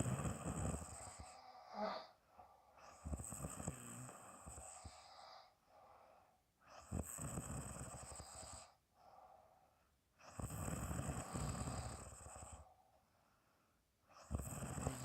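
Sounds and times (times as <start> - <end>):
woman snoring: 0.0 - 2.2, 2.9 - 5.6, 6.8 - 8.8, 10.3 - 12.6, 14.2 - 15.0
soft breaths out: 4.6 - 6.4.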